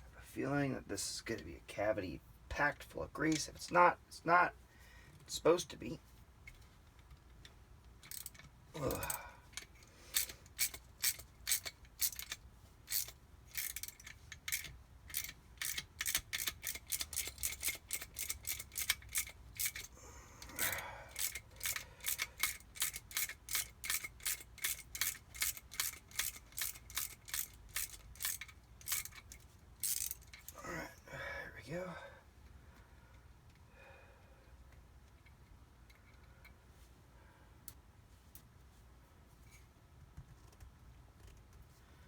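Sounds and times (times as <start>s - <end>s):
hand tool working on metal: 8.0s - 30.6s.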